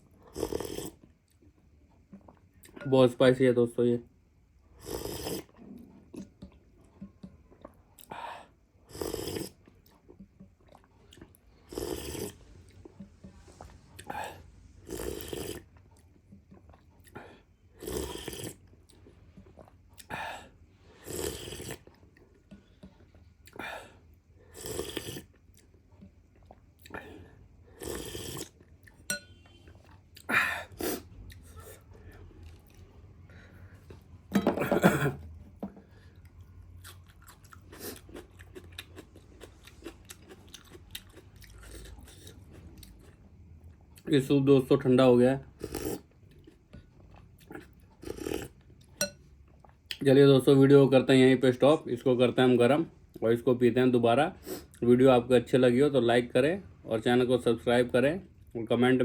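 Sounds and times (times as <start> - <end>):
loud slurps of soup: 4.8 - 5.6, 11.6 - 12.7.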